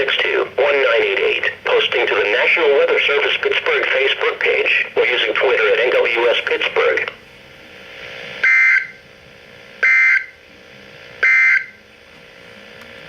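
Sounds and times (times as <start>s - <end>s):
low radio hiss: 0.0s - 8.5s
two-tone digital screeches: 9.8s - 10.3s, 11.2s - 11.7s.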